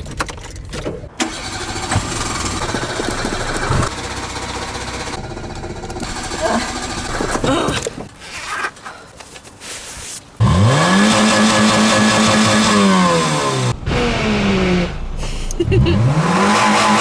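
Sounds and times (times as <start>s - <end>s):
car engine revving hard: 10.4s - 17.0s.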